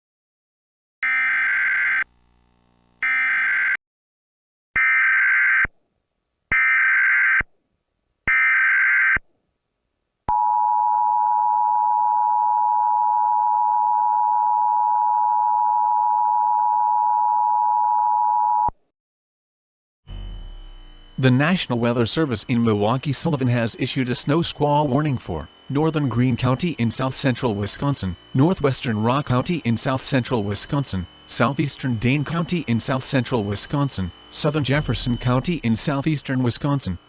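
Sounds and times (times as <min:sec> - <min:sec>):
steady two-tone attention signal: 0:01.0 - 0:02.1, 0:20.1 - 0:37.0
short electronic bursts: 0:20.1 - 0:37.0
warbling data bursts: 0:20.1 - 0:37.0.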